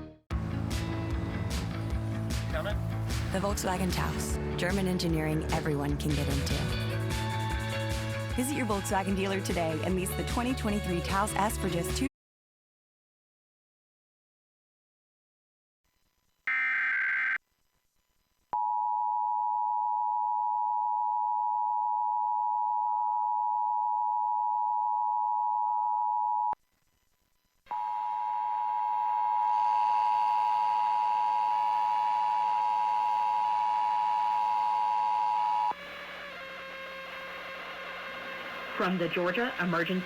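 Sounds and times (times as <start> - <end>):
harsh two-tone alarm: 16.5 - 17.4, 27.7 - 40.0.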